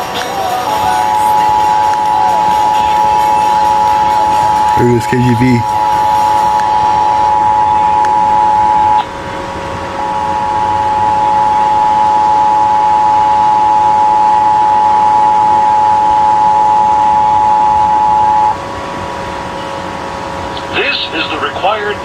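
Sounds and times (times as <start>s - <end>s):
faint steady tone: 0.7s - 20.7s
two-tone alert signal: 1.0s - 9.1s.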